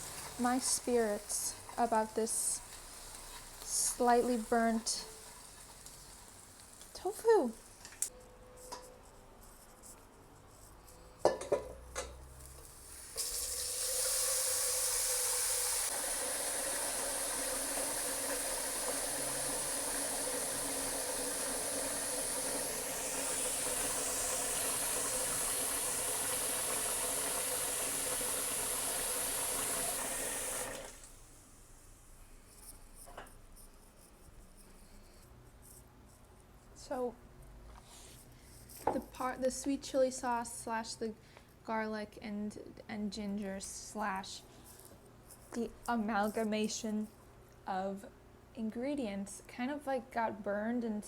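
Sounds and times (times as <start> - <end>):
water running from kitchen tap: 0.0 - 7.8, 12.7 - 31.2.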